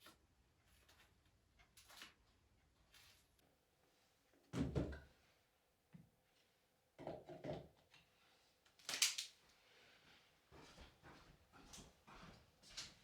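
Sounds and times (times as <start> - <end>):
objects knocking and clattering: 7.0 - 7.8.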